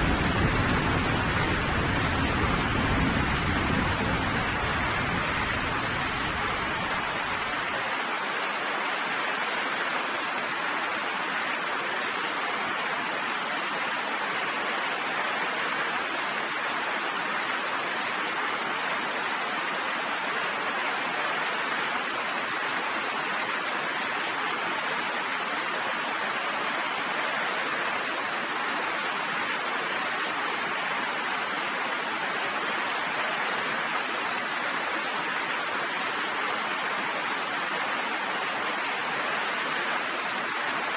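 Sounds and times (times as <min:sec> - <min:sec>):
low thunder rumble: 0:00.0 - 0:06.7
steady rain pouring: 0:00.0 - 0:40.9.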